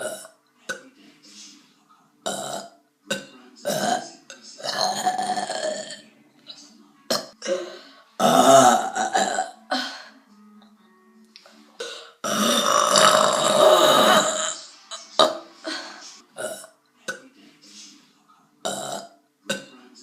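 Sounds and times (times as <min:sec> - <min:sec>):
person burping: 0:00.0 - 0:00.8, 0:02.2 - 0:06.0, 0:07.1 - 0:10.0, 0:11.8 - 0:14.6, 0:15.2 - 0:15.8, 0:16.4 - 0:17.2, 0:18.6 - 0:19.7.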